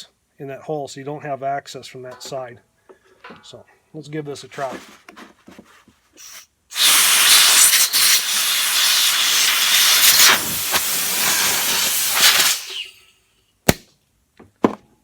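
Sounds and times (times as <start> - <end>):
air blow gun hissing: 6.2 - 13.1.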